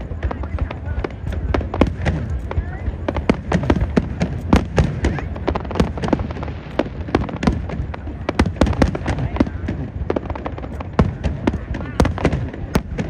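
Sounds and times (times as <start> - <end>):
fireworks cracks and booms: 0.0 - 13.0.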